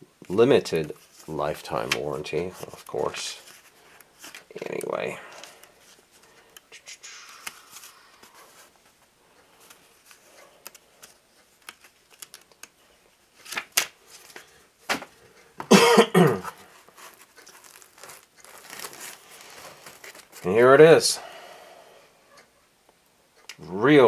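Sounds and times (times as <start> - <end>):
packaging rustling and clicking: 0.8 - 6.6, 9.6 - 12.8, 13.4 - 15.2, 16.5 - 20.5
loud cough: 15.7 - 16.5.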